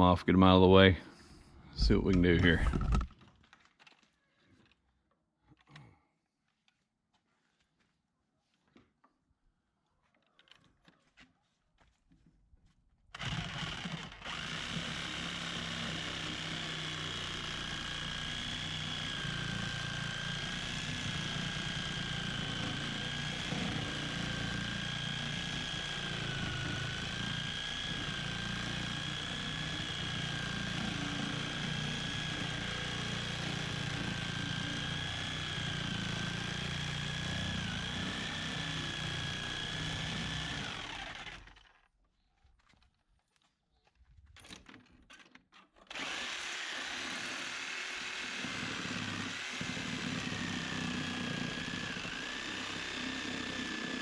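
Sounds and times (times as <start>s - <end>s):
power saw cutting wood: 13.2s - 41.9s, 45.8s - 54.0s.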